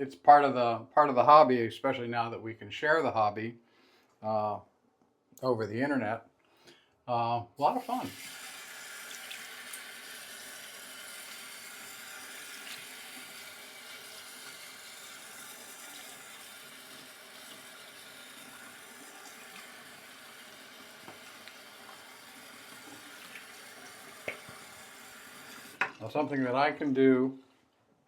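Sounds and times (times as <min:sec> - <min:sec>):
tap water running into sink: 0:07.6 - 0:26.1.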